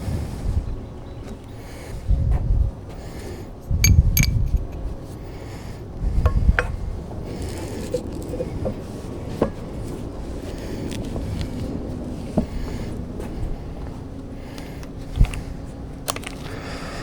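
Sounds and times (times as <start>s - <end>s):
metal tools clinking: 3.8s - 4.8s.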